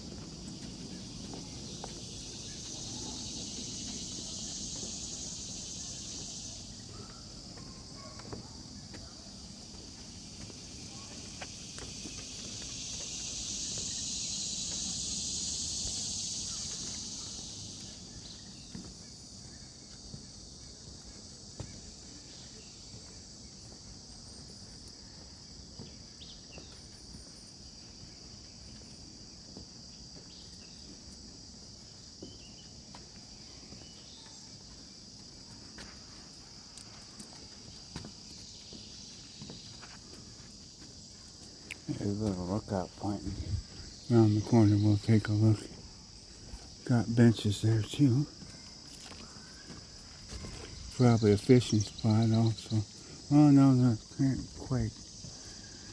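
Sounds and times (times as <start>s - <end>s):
insects droning chorus: 0.0s - 55.9s
loud insect buzz: 10.3s - 18.7s.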